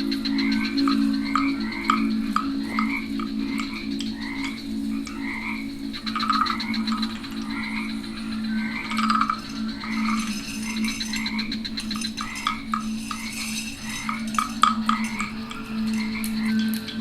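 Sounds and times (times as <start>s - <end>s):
frogs croaking: 0.0s - 17.0s
high insect trill: 0.0s - 17.0s
low even hum: 0.0s - 17.0s.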